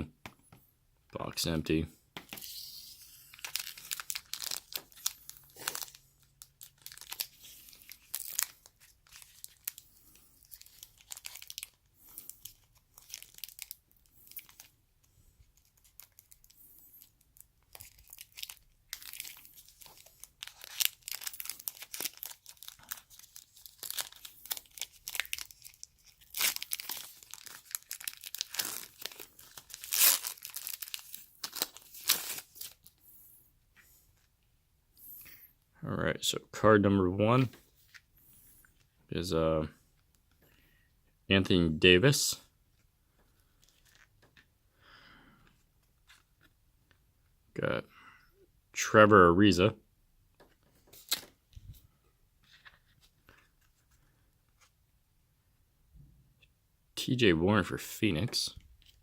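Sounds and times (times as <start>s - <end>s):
plastic packaging tearing and crinkling: 2.3s - 14.7s, 15.6s - 33.0s, 50.9s - 51.3s.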